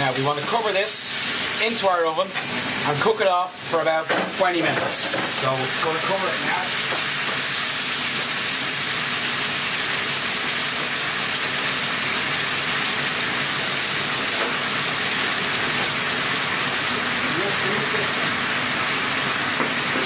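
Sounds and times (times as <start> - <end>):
sauce sizzling and bubbling: 0.0 - 20.0.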